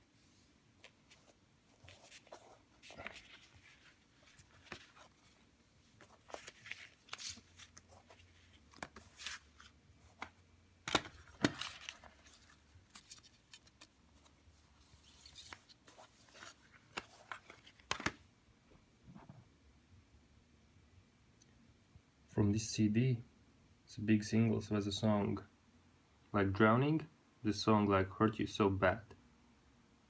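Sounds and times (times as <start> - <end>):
paper rustling: 0.8 - 18.2.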